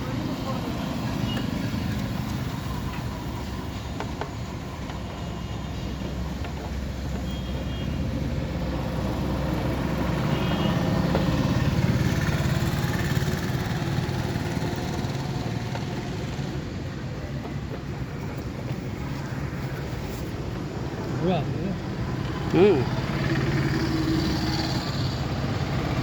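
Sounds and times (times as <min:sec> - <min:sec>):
heavy vehicle passing: 0:18.0 - 0:26.0.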